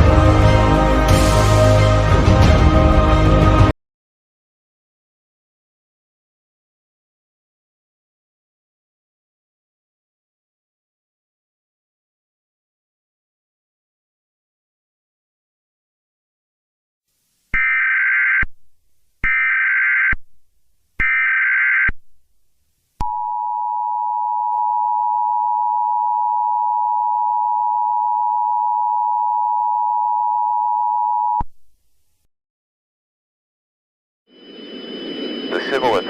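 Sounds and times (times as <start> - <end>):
two-tone attention signal: 34.4 - 36.0
digital header data bursts: 34.5 - 36.0.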